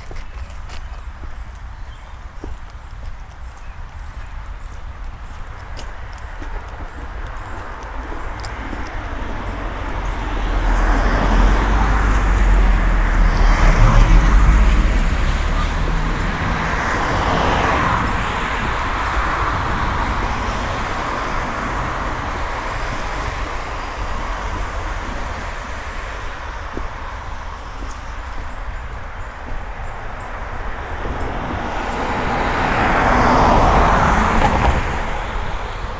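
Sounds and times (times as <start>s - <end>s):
car engine rumble: 7.7s - 35.9s
tyres hissing on wet road: 7.8s - 35.9s.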